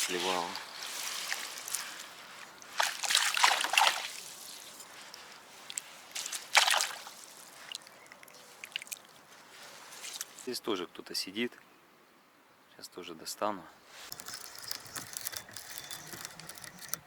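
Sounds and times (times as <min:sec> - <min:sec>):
water splashing: 0:00.0 - 0:09.2.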